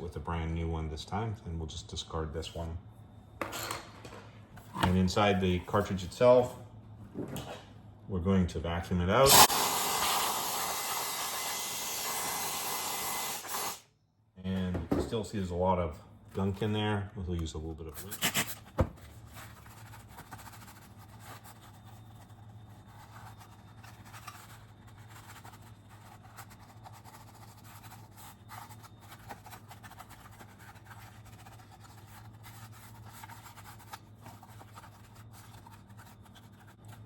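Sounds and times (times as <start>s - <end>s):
scrubbing plastic by hand: 18.0s - 37.0s.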